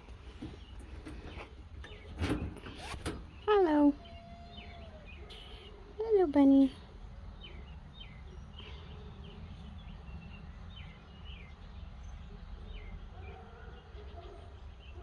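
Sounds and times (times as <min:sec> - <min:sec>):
low outdoor hum: 0:00.0 - 0:15.0
wild birds chirping: 0:00.0 - 0:15.0.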